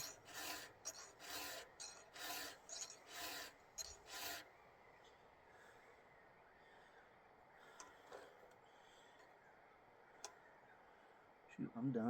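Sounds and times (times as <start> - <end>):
file rasping on saw chain: 0.0 - 4.5.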